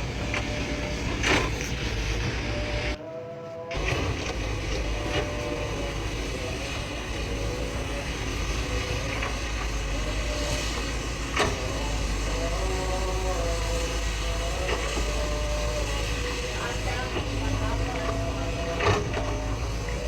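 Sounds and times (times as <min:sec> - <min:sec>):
diesel excavator engine rumble: 0:00.0 - 0:20.0.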